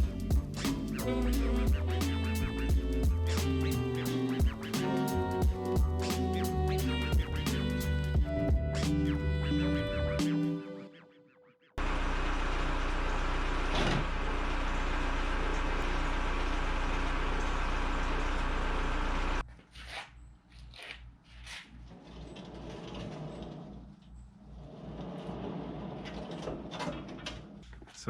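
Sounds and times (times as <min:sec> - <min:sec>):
backhoe engine running: 0:11.8 - 0:19.4
pulsing engine: 0:11.8 - 0:19.4.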